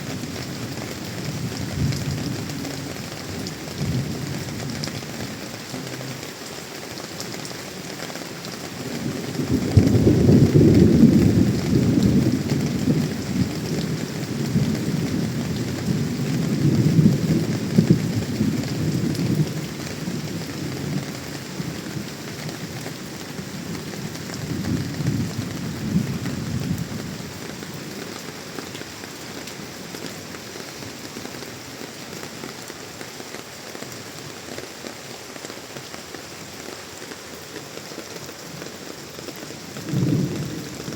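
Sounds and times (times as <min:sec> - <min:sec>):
heavy rain falling: 0:00.0 - 0:40.9
thunder rumbling: 0:09.0 - 0:22.1, 0:23.6 - 0:27.8, 0:39.6 - 0:40.9.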